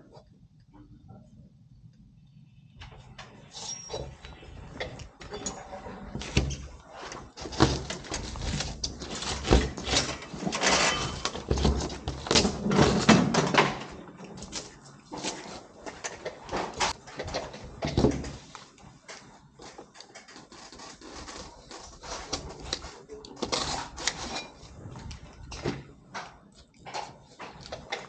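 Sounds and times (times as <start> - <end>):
foam panel scraping: 5.9 - 13.2.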